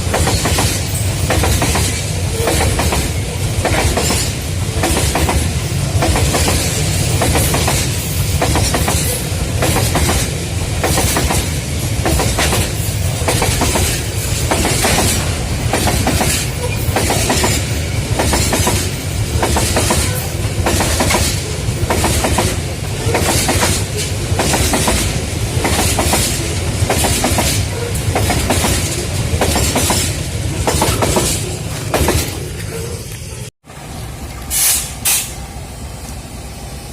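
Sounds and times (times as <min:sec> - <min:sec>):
train wheels clattering over rail joints: 0:00.0 - 0:32.8
heavy train rumble: 0:00.0 - 0:36.9.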